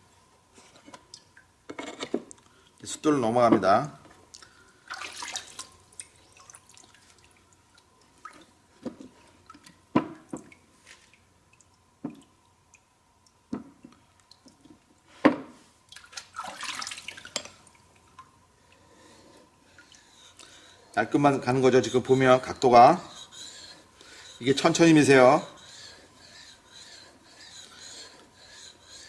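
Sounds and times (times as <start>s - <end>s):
water dripping: 4.3s - 8.5s, 9.4s - 14.9s, 15.8s - 18.9s.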